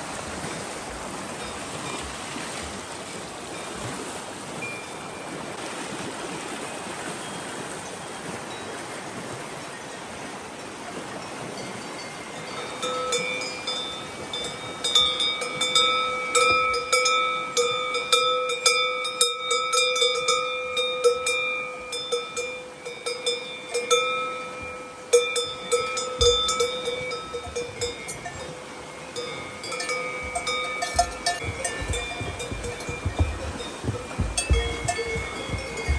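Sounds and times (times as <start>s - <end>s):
cowbells clanking: 11.6s - 35.9s.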